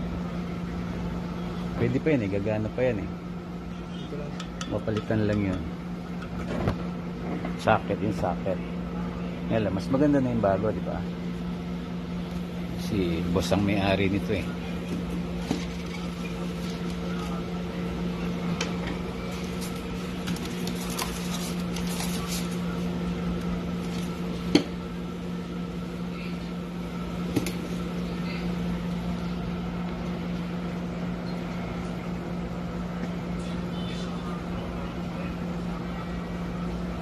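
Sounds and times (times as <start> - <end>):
microwave oven humming: 0.0 - 37.0.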